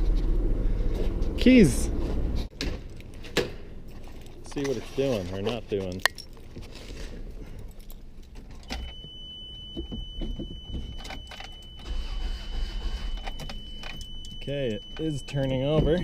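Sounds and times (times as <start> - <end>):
keys jangling: 5.8 - 6.8, 7.4 - 8.7
steady high tone: 8.8 - 16.0
car engine cranking on starter: 11.7 - 13.3.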